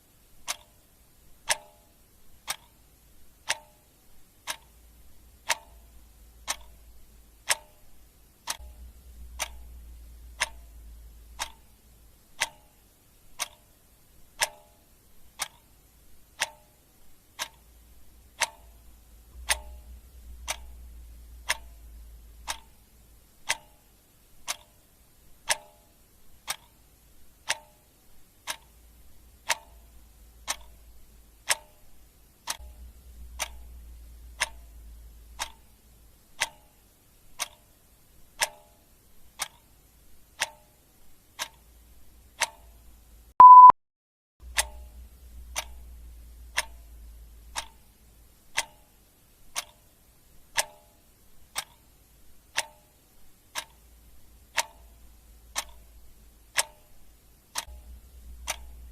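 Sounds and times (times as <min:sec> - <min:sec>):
faint low rumble: 0:00.2 - 0:25.6, 0:26.3 - 0:36.5, 0:44.4 - 0:48.6, 0:53.1 - 0:58.9
clock ticking: 0:00.3 - 0:43.7, 0:44.4 - 0:58.9.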